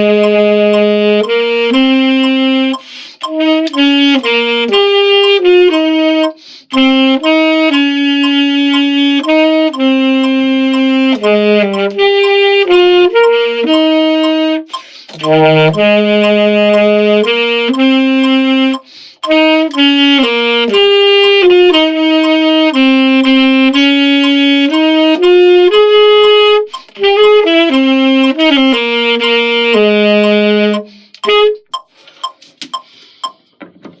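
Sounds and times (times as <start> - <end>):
wind instrument melody: 0.0 - 31.9
scattered clicks and knocks: 13.2 - 17.4, 18.2 - 27.5, 30.3 - 34.0.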